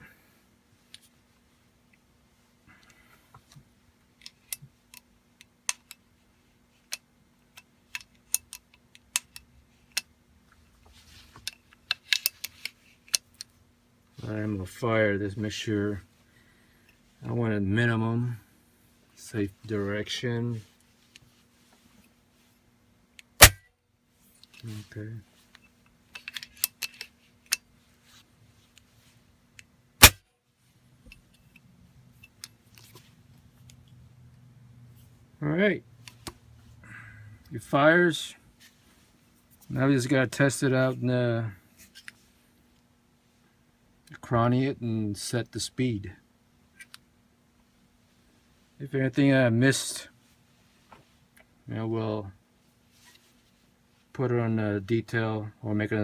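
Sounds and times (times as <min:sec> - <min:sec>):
faint steady hum: 0:00.0 - 0:56.0
clicks and taps of rifle parts: 0:11.4 - 0:13.5
air rifle shot: 0:30.0 - 0:30.2.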